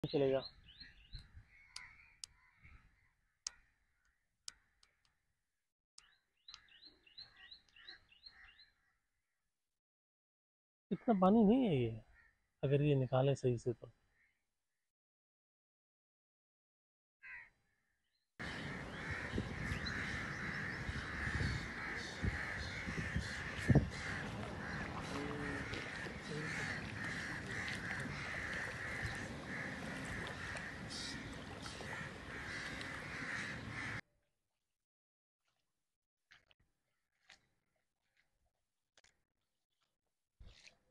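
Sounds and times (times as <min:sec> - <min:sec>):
crows cawing: 0:01.6 - 0:03.7, 0:17.2 - 0:17.6, 0:18.4 - 0:34.0.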